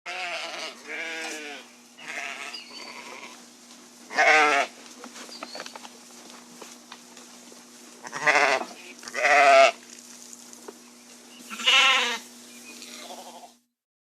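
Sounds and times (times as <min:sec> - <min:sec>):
sheep bleating: 0:00.1 - 0:03.4, 0:04.1 - 0:04.7, 0:08.0 - 0:09.8, 0:11.5 - 0:13.6.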